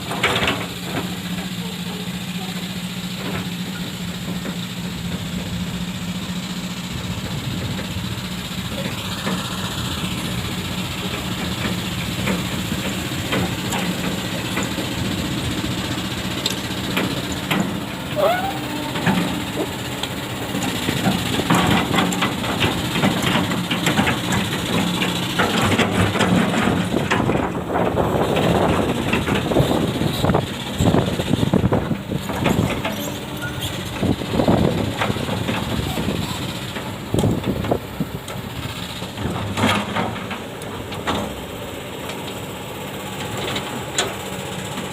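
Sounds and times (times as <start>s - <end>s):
excavator diesel engine running: 0.0s - 44.9s
clattering and scraping in sand: 7.4s - 42.4s.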